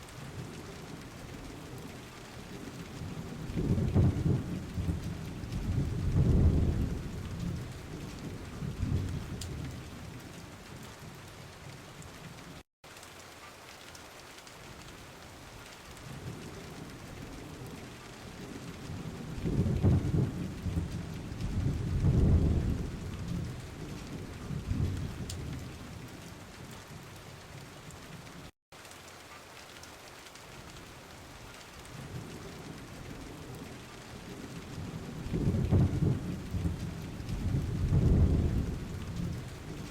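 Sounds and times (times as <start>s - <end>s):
steady rainfall: 0.0s - 39.9s
rolling thunder: 1.2s - 10.2s, 18.4s - 26.1s, 32.1s - 39.9s.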